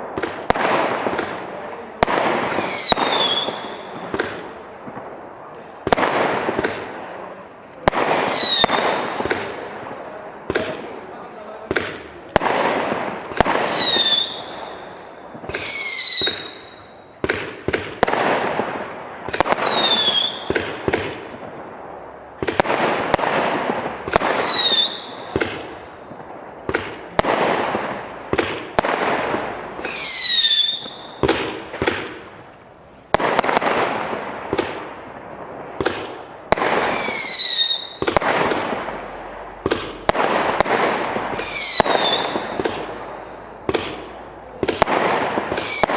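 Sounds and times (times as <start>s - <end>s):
firework bursts: 0.0s - 45.9s
firework crackling: 0.0s - 45.9s
firework launch thumps: 38.0s - 45.9s.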